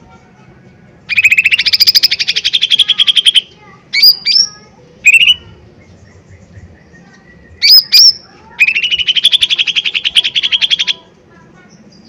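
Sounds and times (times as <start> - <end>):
bird giving loud sharp calls: 1.1 - 5.6, 7.6 - 11.1.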